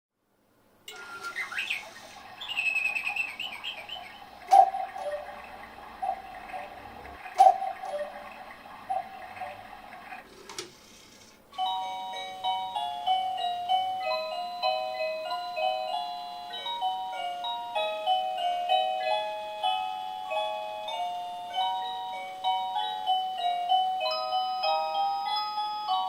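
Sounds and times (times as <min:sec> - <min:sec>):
bird chirps: 0:00.9 - 0:09.9
two-note cuckoo calls: 0:00.9 - 0:10.1, 0:16.2 - 0:20.9.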